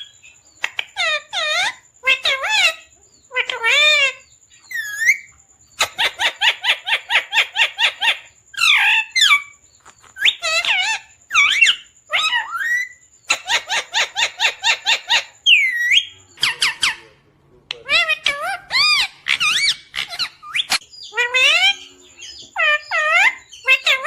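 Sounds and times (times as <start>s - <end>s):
parrot chirping: 0.0s - 24.0s
parrot whistled calls: 10.2s - 17.0s, 17.8s - 22.0s.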